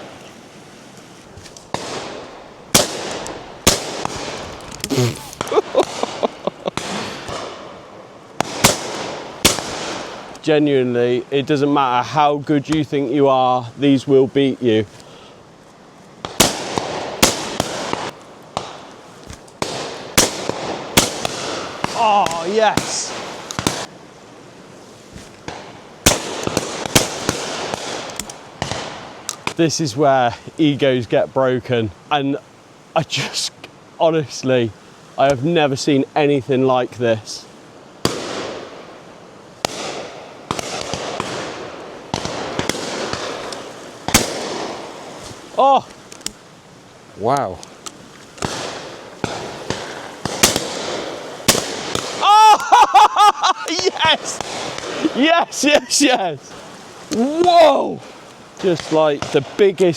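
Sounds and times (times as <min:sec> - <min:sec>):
shotgun shots echoing: 0:01.7 - 0:04.5, 0:08.4 - 0:10.3, 0:16.2 - 0:18.9, 0:19.6 - 0:23.9, 0:25.5 - 0:29.1, 0:38.0 - 0:38.9, 0:39.6 - 0:45.2, 0:48.4 - 0:52.2.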